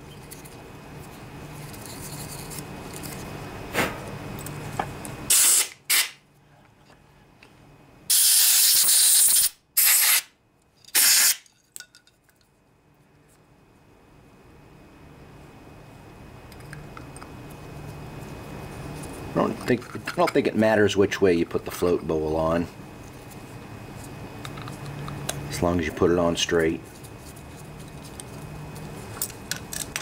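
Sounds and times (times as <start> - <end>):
spray can hissing: 8.1 - 10.3, 11.0 - 11.4.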